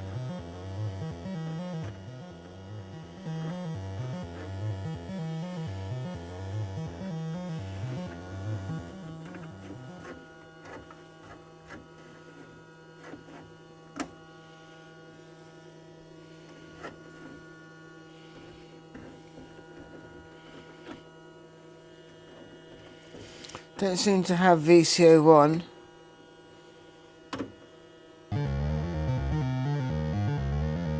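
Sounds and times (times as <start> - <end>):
sequenced synthesizer pattern: 28.3 - 30.9.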